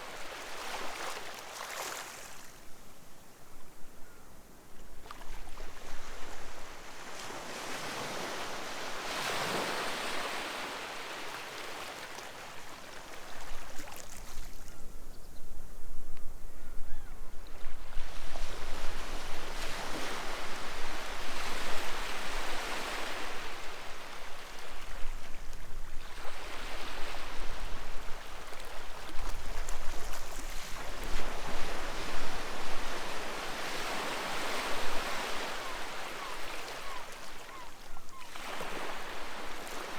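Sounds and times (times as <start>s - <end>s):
sea waves breaking on beach: 5.6s - 12.9s.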